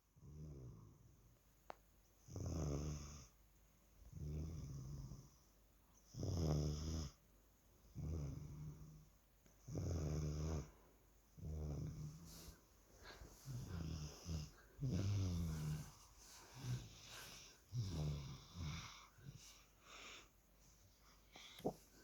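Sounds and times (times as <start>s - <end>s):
person snoring: 9.7s - 10.7s, 11.4s - 19.6s.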